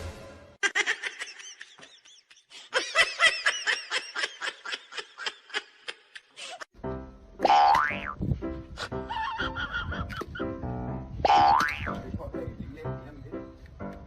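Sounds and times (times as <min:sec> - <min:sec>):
high-pitched giggling: 0:08.8 - 0:10.4.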